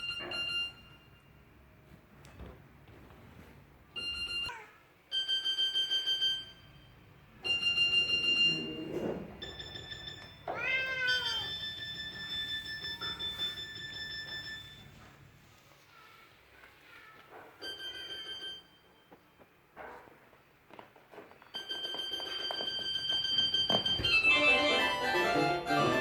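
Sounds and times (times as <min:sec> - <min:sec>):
electronic alarm beeps: 0:00.0 - 0:01.4, 0:05.1 - 0:10.5, 0:11.2 - 0:14.9, 0:17.6 - 0:19.0
cat meowing: 0:10.5 - 0:11.6.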